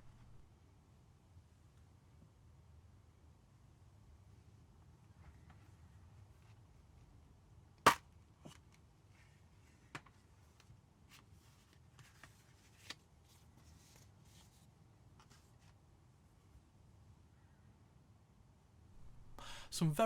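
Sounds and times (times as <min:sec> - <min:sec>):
soft rustling: 0:10.4 - 0:15.8.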